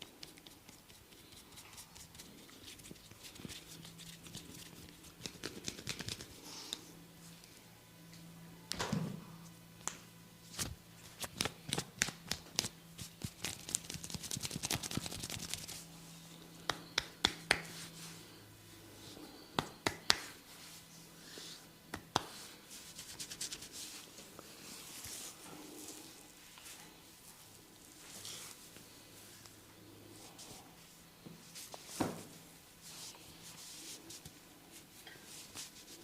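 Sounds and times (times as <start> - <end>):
fingers scratching through hair: 12.6 - 15.9, 22.8 - 24.1.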